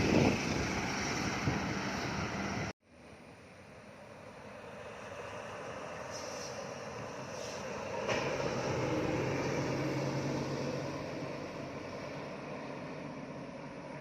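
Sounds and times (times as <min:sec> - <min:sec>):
heavy vehicle engine drone: 0:00.0 - 0:14.0.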